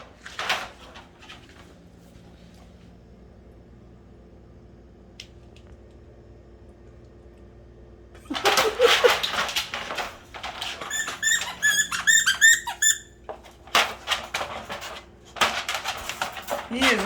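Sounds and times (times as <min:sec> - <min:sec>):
puppy scuffling and rustling: 0:00.0 - 0:03.1, 0:08.3 - 0:17.0
puppy high squeaks: 0:10.8 - 0:13.1.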